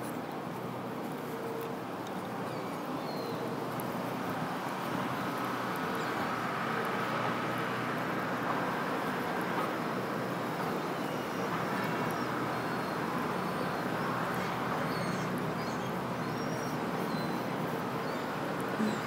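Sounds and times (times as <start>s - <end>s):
street ambience hum: 0.0s - 19.0s
birds chirping: 12.1s - 19.0s.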